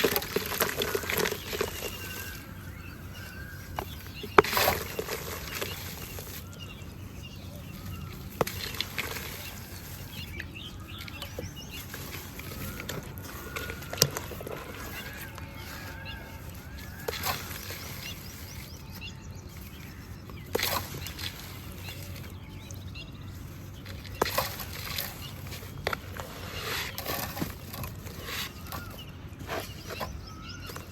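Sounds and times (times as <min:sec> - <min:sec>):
water trickling over pebbles: 0:00.0 - 0:06.8
birds chirping: 0:00.0 - 0:30.9.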